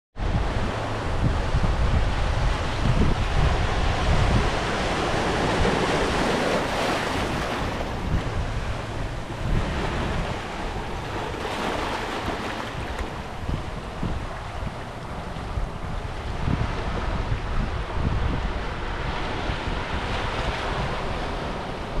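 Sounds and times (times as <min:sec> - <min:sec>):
wind buffeting microphone: 0:00.2 - 0:22.0
surf washing against rocks: 0:02.1 - 0:15.5.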